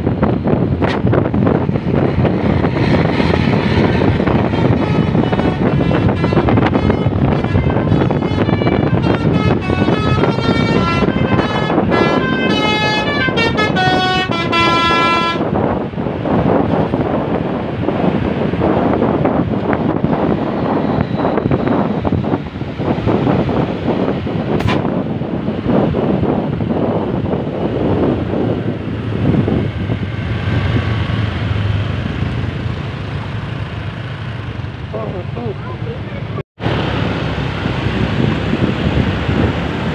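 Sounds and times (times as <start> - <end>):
bus engine rumble: 0.0 - 39.9
road noise: 0.0 - 39.9
traffic: 0.0 - 39.9
wind: 0.0 - 39.9
bus horn playing a melody: 4.3 - 15.6.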